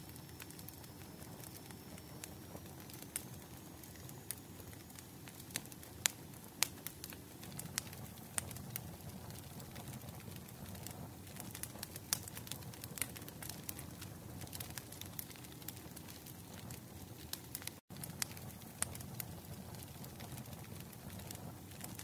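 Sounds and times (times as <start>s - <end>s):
wood fire crackling: 0.0s - 22.0s.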